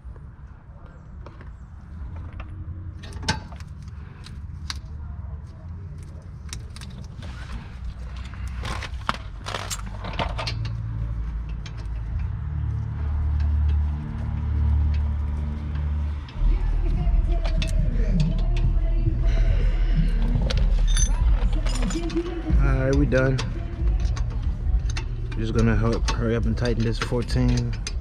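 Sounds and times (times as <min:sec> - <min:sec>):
low rumble: 0:00.0 - 0:28.0
metallic clinks of hand tools: 0:20.7 - 0:22.6.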